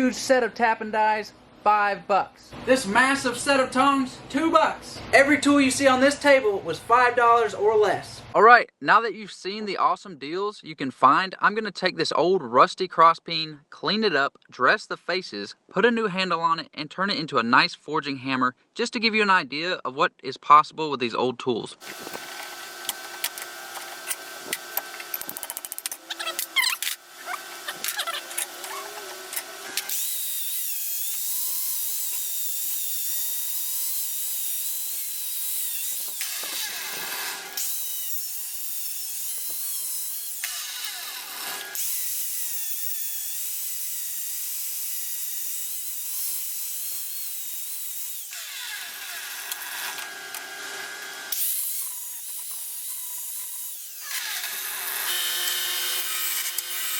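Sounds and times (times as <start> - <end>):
power grinder whining: 21.8 - 56.9.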